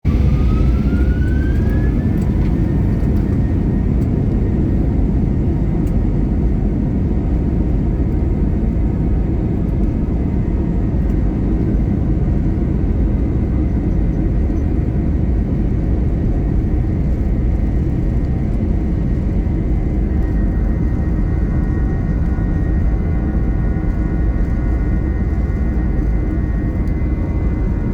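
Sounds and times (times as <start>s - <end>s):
airplane engines rumbling: 0.0s - 27.9s
high engine whine: 0.0s - 27.9s.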